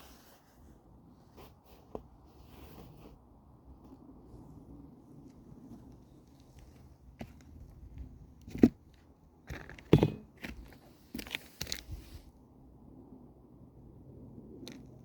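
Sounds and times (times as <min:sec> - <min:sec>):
crunching and scraping: 0:05.2 - 0:12.3.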